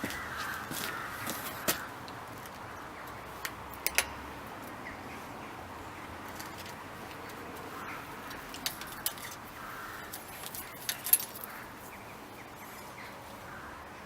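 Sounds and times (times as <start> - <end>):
light metallic clinks and ticks: 3.4 - 4.7, 8.2 - 11.9.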